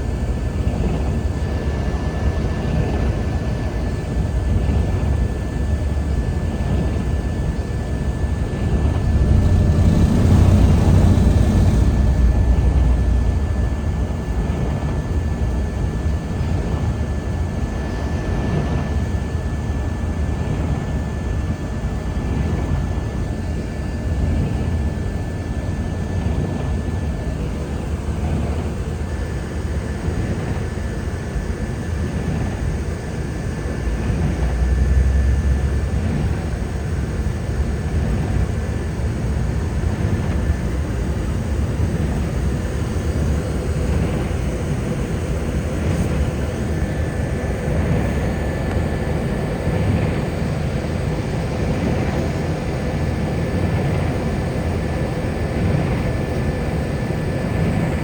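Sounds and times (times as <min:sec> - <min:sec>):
road and tyre rumble in car: 0:07.9 - 0:15.0, 0:33.8 - 0:36.7.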